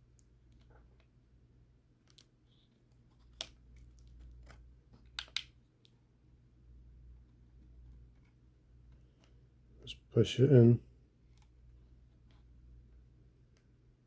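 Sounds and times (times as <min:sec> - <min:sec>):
plastic connector clicks: 0:03.3 - 0:05.6.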